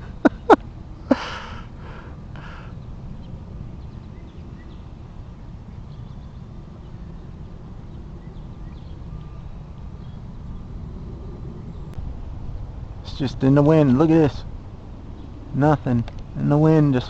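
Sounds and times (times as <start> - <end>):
small birds chirping: 1.9 - 10.8.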